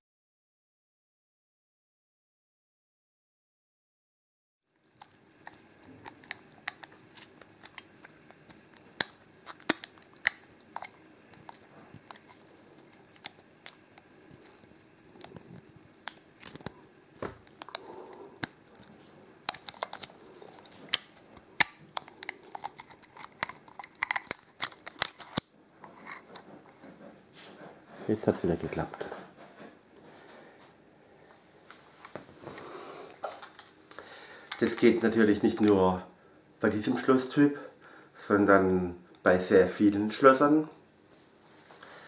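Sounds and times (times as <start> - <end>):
metal shim clicking and crinkling: 4.7 - 28.2, 33.2 - 35.8.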